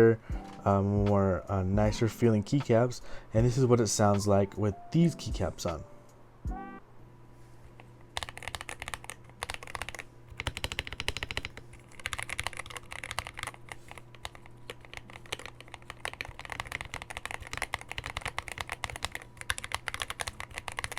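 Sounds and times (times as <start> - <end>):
mechanical keyboard typing: 8.2 - 20.9.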